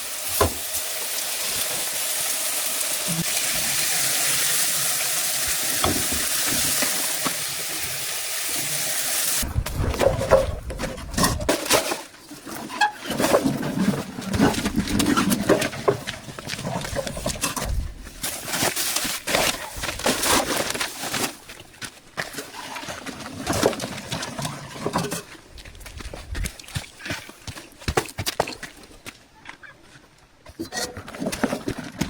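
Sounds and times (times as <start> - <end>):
food sizzling in a pan: 0.0 - 9.4.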